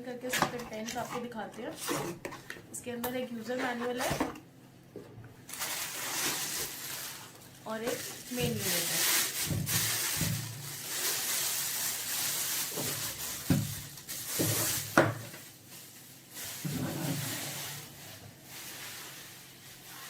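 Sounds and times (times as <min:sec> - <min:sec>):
packaging rustling: 0:05.5 - 0:20.0.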